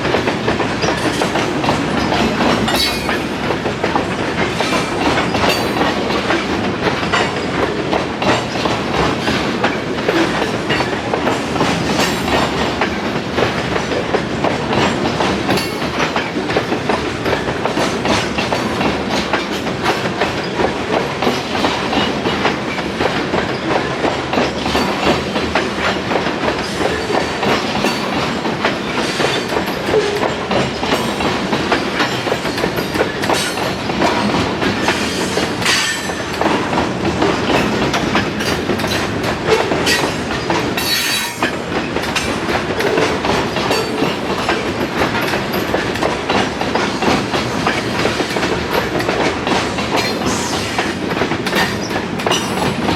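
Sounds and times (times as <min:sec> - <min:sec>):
train wheels clicking over rail joints: 0:00.0 - 0:52.9.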